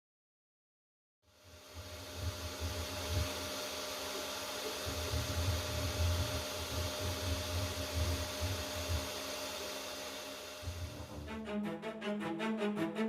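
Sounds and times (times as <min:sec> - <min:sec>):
fans humming over hiss: 0:01.3 - 0:12.0
stepper motor drone: 0:05.0 - 0:13.0.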